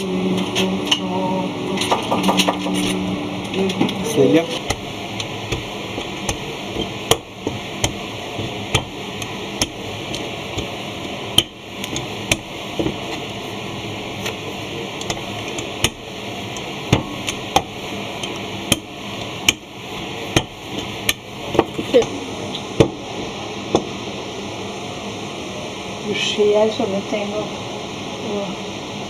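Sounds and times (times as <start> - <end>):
steady background hiss: 0.0 - 29.0
cutter stamping dough on board: 4.6 - 13.2.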